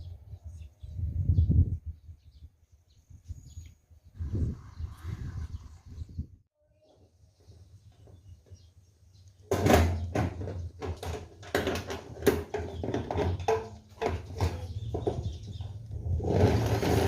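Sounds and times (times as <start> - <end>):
knocks and clatter of hand work: 9.5 - 15.7.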